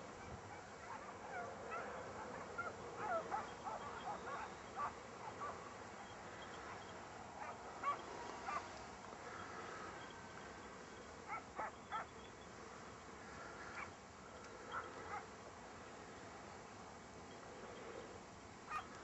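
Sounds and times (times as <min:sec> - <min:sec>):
hounds yelping: 0:00.2 - 0:10.5, 0:11.2 - 0:12.4, 0:13.4 - 0:15.3, 0:18.7 - 0:19.0.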